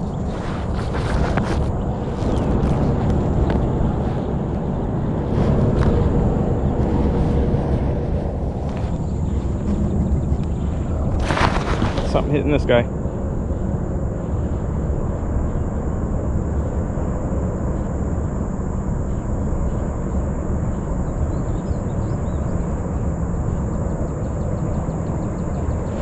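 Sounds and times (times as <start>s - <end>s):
low rumble: 0.0s - 20.6s.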